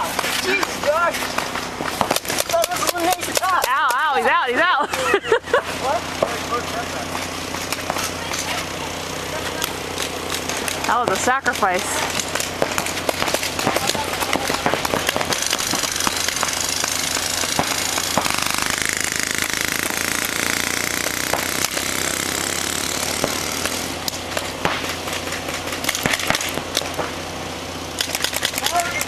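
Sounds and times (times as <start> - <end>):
paintball markers popping: 1.8 - 4.0, 28.0 - 29.0.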